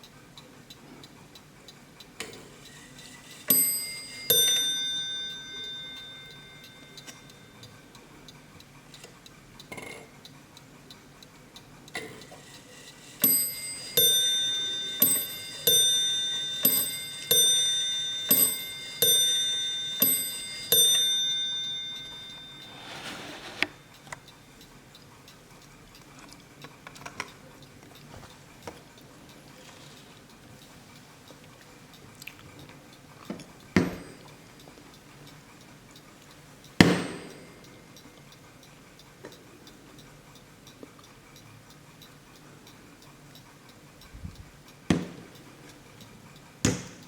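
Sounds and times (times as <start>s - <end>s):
clock ticking: 0.0s - 47.0s
clock bells striking: 3.0s - 7.8s, 13.0s - 24.0s.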